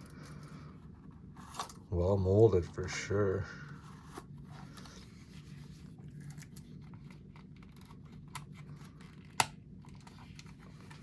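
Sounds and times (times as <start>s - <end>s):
low steady hum: 0.0s - 11.0s
clicks and rustling of handling: 6.0s - 11.0s.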